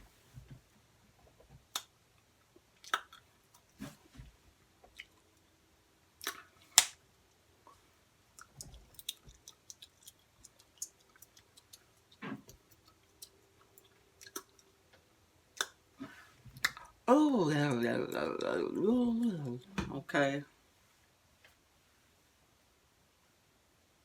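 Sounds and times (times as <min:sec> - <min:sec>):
wet mouth smacking and clicks: 0:02.8 - 0:03.2, 0:06.2 - 0:06.9, 0:08.4 - 0:14.7, 0:15.6 - 0:15.8.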